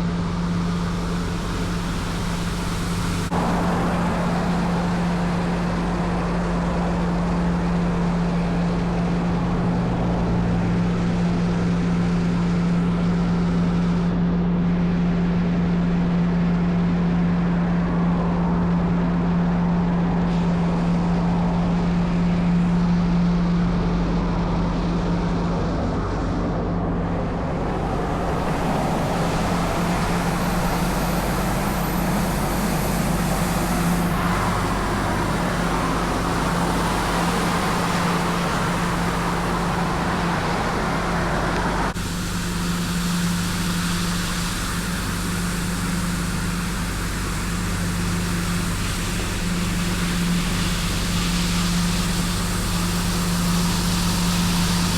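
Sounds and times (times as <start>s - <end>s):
hiss of air: 0.0s - 10.1s, 26.2s - 54.9s
street sweeper engine drone: 0.0s - 54.9s.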